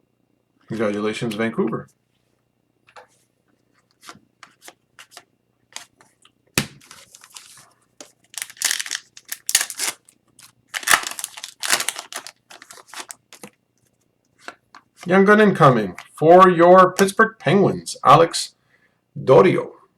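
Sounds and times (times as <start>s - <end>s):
crinkly wrapper tearing: 6.8s - 7.6s, 8.2s - 13.4s.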